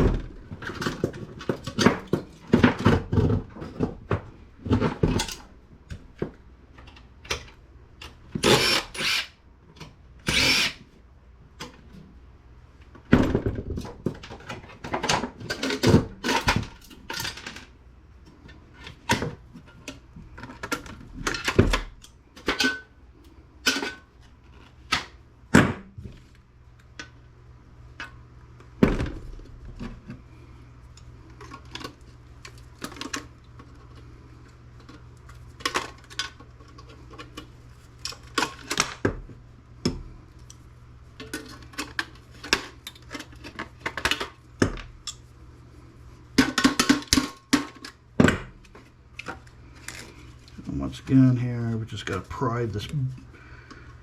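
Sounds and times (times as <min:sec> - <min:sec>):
power screwdriver whirring: 0:08.4 - 0:09.3, 0:10.3 - 0:10.8.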